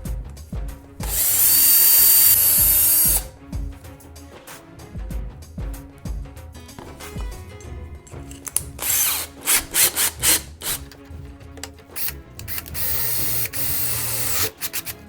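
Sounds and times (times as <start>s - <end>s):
background music: 0.0s - 15.0s
power tool whirring: 1.0s - 3.3s, 8.3s - 11.0s, 11.6s - 15.0s
rasping strokes: 8.2s - 15.0s.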